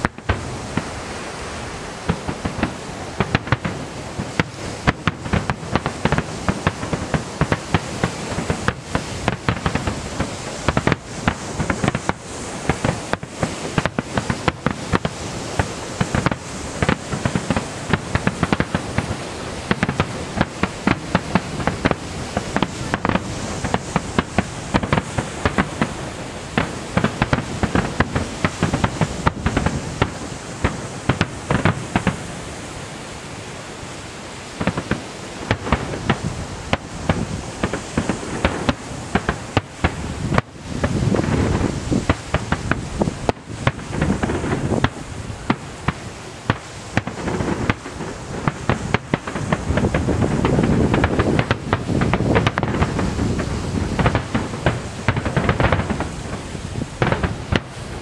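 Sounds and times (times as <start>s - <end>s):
fireworks bangs and crackles: 0.0s - 58.0s
continuous rumble: 34.5s - 58.0s.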